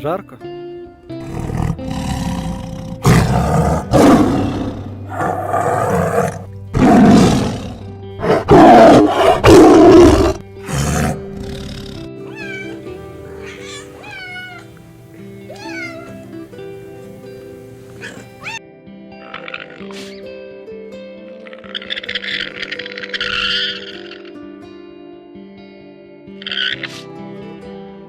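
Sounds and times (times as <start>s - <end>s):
soft background music: 0.0s - 28.0s
loud rough animal calls: 11.1s - 14.6s, 21.4s - 24.4s, 26.4s - 27.0s.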